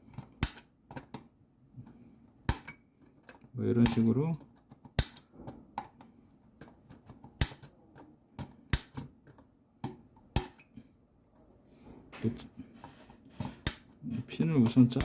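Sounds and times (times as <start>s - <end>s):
cutters snipping metal pins: 0.2s - 1.2s, 2.5s - 6.0s.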